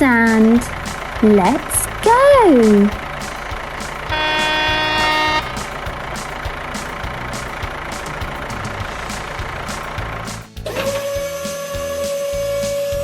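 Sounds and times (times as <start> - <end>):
musical tone: 0.0 - 13.0
truck engine rumbling: 0.0 - 13.0
truck horn honking: 4.0 - 6.2, 10.7 - 13.0.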